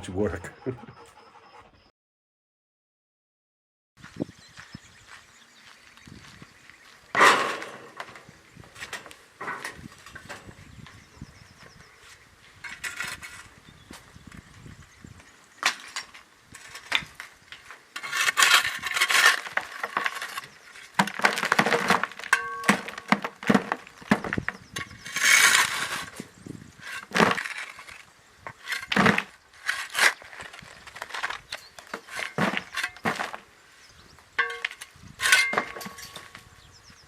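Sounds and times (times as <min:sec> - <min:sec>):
hard material clattering and crunching: 0:15.6 - 0:33.5, 0:34.4 - 0:36.5.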